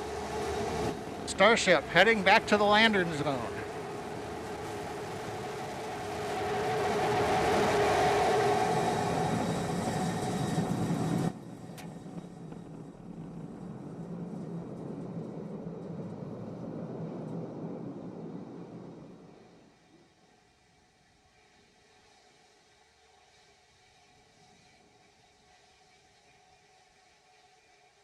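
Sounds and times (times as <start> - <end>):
rocket engine roar: 0.0 - 19.3
steady rumble: 0.0 - 19.5.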